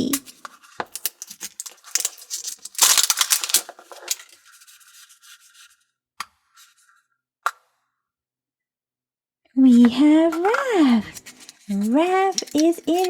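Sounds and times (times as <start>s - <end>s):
packaging crinkling and tearing: 0.9s - 5.1s, 11.3s - 13.0s.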